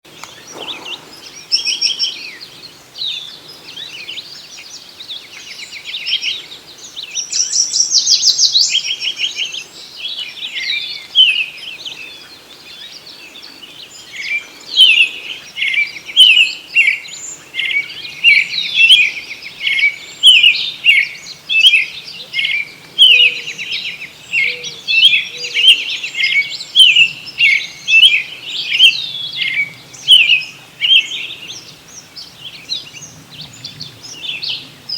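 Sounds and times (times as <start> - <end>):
songbirds chirping: 0.0 - 34.9
bird quick repeated chirps: 0.2 - 2.4
loud rapid bird trill: 0.2 - 4.6.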